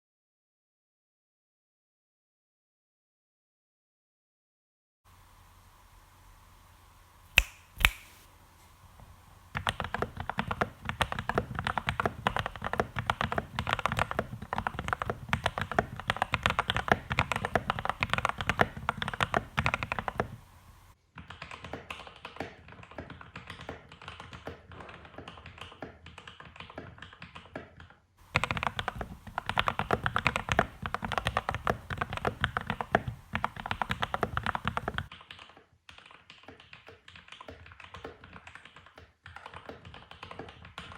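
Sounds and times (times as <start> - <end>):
sharp clicks: 7.3 - 8.3
fast typing on mechanical keyboard: 9.5 - 20.5, 21.2 - 40.9.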